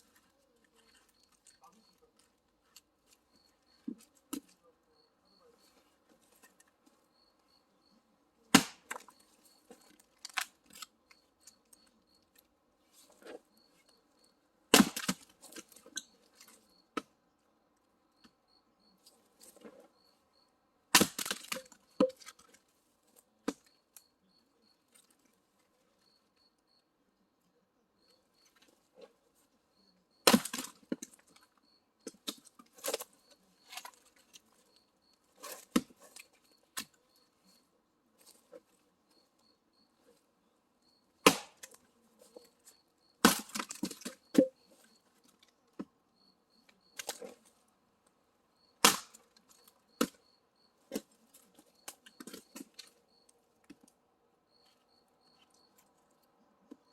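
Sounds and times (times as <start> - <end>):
wood splitting cracks: 8.5 - 9.1, 14.7 - 15.8, 20.9 - 22.4, 30.2 - 31.2, 41.2 - 41.8, 43.2 - 44.6, 48.8 - 50.2.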